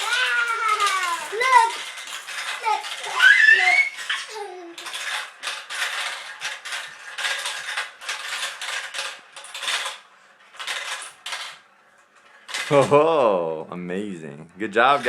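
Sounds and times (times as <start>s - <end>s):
child's high voice: 0.0s - 1.9s, 2.6s - 4.9s
marbles rattling down a track: 0.0s - 11.6s.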